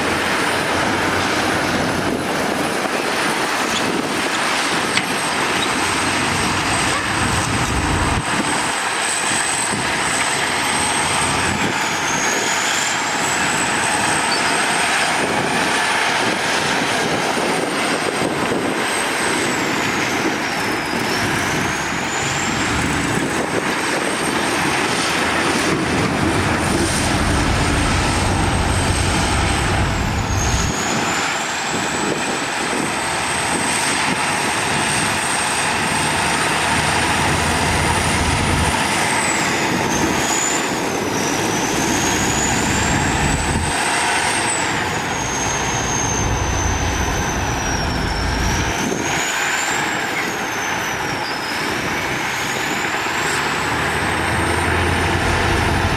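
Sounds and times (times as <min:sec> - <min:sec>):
heavy machinery engine rumble: 0:00.0 - 0:55.9
high whine: 0:20.3 - 0:31.3, 0:37.2 - 0:50.4.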